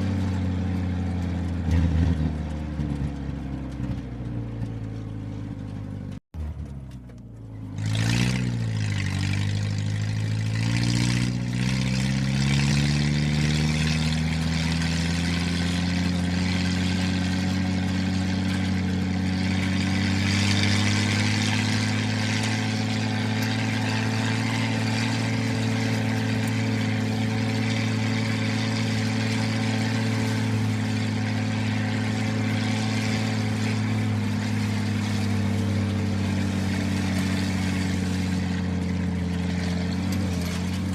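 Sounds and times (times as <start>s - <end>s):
motor droning: 6.4s - 40.9s.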